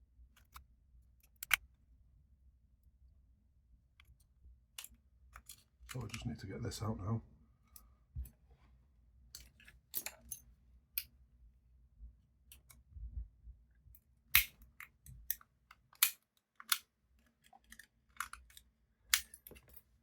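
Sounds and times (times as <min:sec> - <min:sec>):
clicks and snaps of prying: 0:00.4 - 0:00.6, 0:01.2 - 0:01.6, 0:04.8 - 0:06.2, 0:14.3 - 0:19.9.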